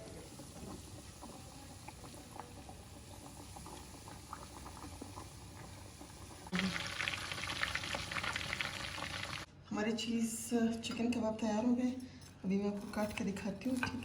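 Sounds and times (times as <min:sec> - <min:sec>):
loud frying sizzle: 0:00.0 - 0:09.5
oil bubbling in frying pan: 0:00.0 - 0:09.5.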